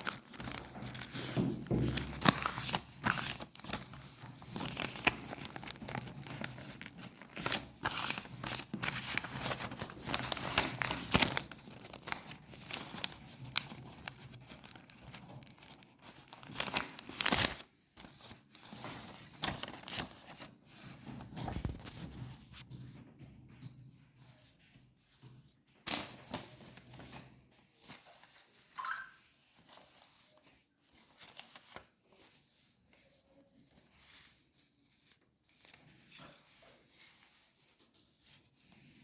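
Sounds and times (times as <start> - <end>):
craft material crinkling and tearing: 0.0 - 20.5, 21.4 - 22.6.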